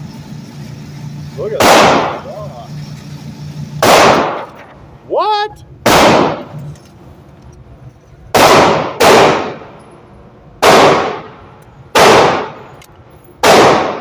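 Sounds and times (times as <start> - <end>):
gunshots with ringing tail: 1.5 - 2.4, 3.8 - 4.5, 5.8 - 6.6, 8.3 - 9.8, 10.6 - 12.7, 13.4 - 14.0.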